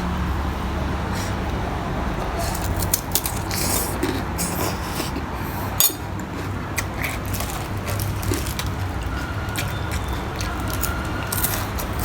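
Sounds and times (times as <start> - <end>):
eating crunches and slurps: 2.2 - 12.0.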